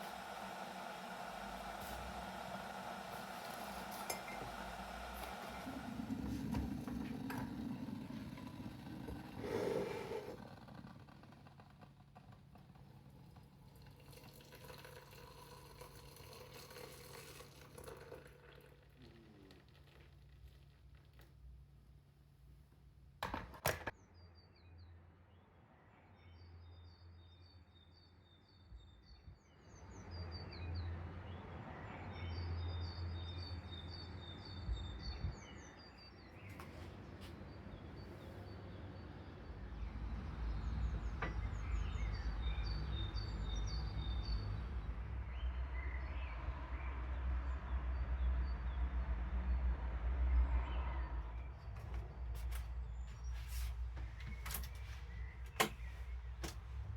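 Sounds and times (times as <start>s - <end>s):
songbirds chirping: 26.2s - 56.9s.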